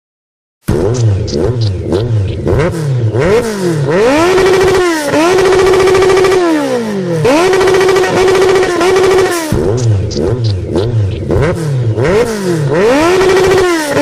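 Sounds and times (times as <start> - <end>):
motorcycle engine revving: 0.6 - 14.0.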